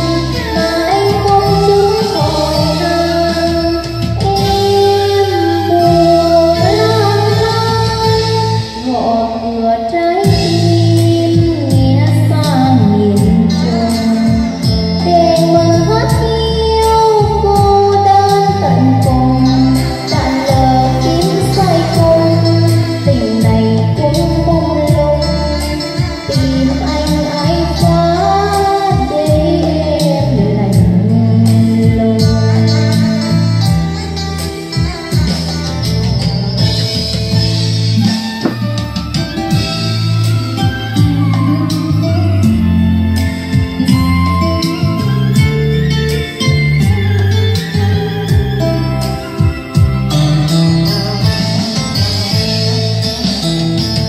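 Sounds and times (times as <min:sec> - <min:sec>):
woman singing with echo: 0:00.0 - 0:33.9, 0:40.6 - 0:46.0
gliding melodic lead line: 0:00.0 - 0:54.0
instrumental backing music: 0:00.0 - 0:54.0
steady bass notes: 0:00.0 - 0:54.0
plucked guitar: 0:10.2 - 0:54.0.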